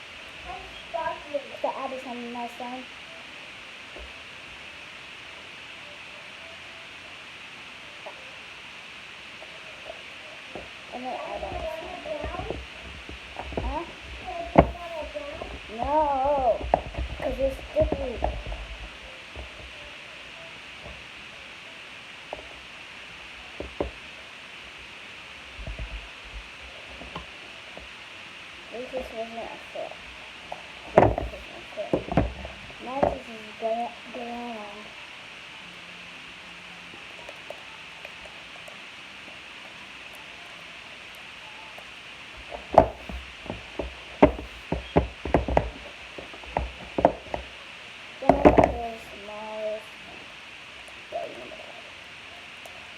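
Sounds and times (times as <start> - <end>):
steady background hiss: 0.0 - 52.9
irregular knocks and taps: 11.3 - 19.9, 23.6 - 24.0, 25.6 - 27.9, 30.5 - 33.2, 42.4 - 47.5, 48.2 - 48.9
objects knocking when set down: 30.9 - 33.2, 42.6 - 47.4, 48.2 - 48.8.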